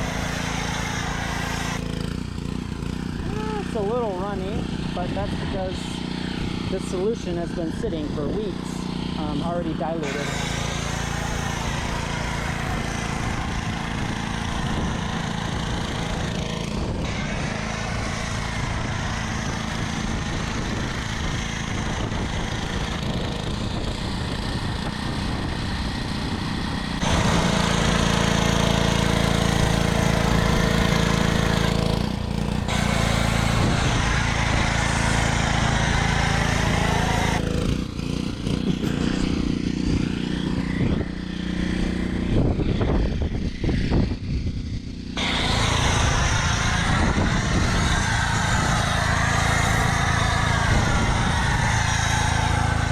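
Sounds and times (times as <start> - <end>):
pressure washer motor hum: 0.0 - 52.9
foam spray hiss: 45.2 - 52.9.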